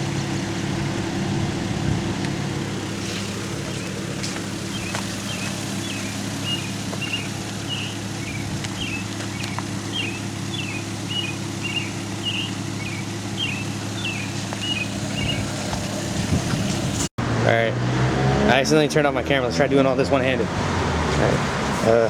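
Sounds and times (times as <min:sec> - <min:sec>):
low engine hum: 0:00.0 - 0:18.6
small songbird chirping: 0:03.0 - 0:16.9.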